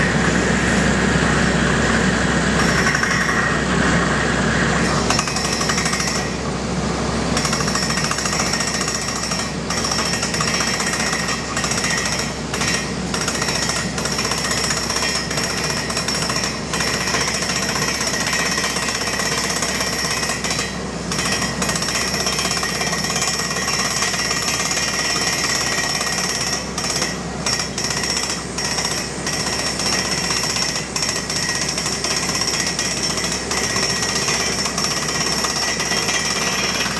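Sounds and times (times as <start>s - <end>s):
steady high whine: 0.0s - 5.4s.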